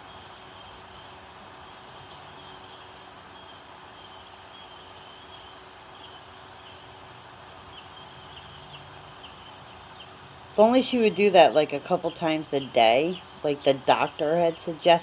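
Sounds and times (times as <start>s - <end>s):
steady background hiss: 0.0s - 15.0s.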